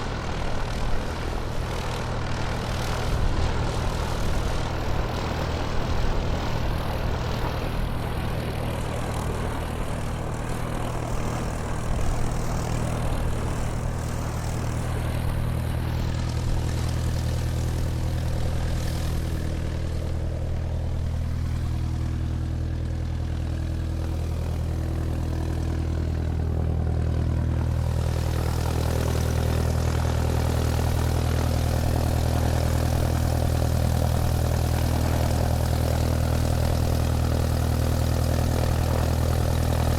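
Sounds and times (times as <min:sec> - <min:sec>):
airplane engine humming: 0:00.0 - 0:39.9.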